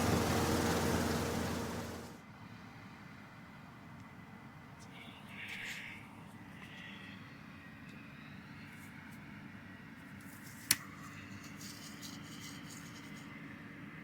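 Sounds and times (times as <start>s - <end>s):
combine harvester droning: 0.0s - 2.2s.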